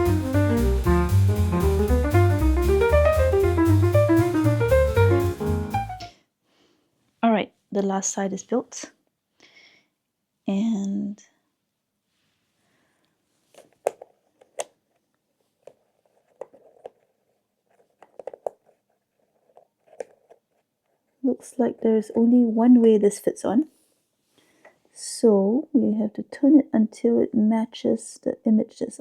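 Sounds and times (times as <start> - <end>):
drum kit: 0.0 - 6.1
jazzy piano tune: 0.0 - 6.1
walking bass line: 0.0 - 6.1
wooden pieces clicking and knocking: 17.7 - 18.8.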